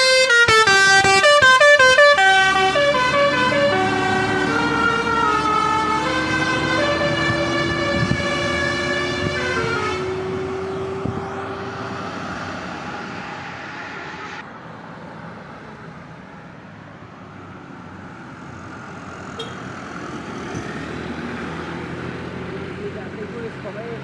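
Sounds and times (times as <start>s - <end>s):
multi-tone horn: 0.0s - 11.2s
heavy truck engine and tyres: 0.0s - 24.0s
traffic noise: 0.0s - 24.0s.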